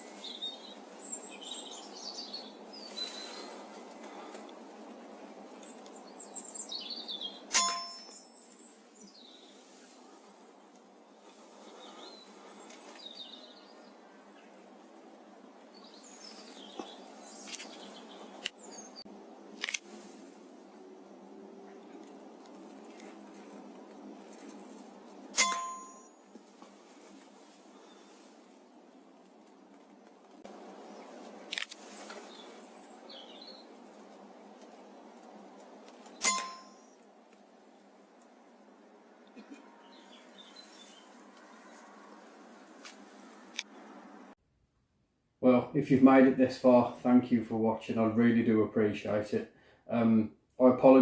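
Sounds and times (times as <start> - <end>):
small birds chirping: 0.0 - 19.4, 25.8 - 43.9
outdoor background noise: 0.0 - 51.0
air rifle shot with ringing: 7.5 - 8.2, 25.3 - 26.2, 36.2 - 37.0
sharp click: 36.2 - 36.8.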